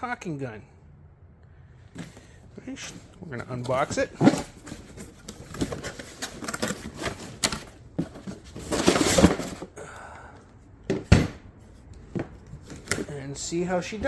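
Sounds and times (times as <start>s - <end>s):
cardboard packaging rustling: 2.0s - 9.8s.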